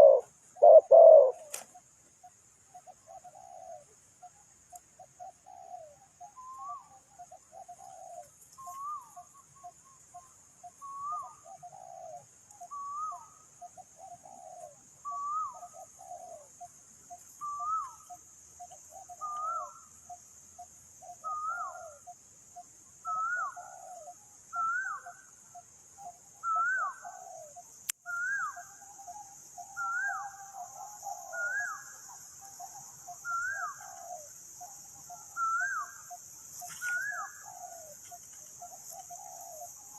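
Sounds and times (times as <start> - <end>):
bird rising and falling call: 0.0 - 1.6
doves cooing: 0.0 - 1.8, 2.7 - 4.3, 5.0 - 19.9, 23.0 - 25.3, 26.0 - 39.9.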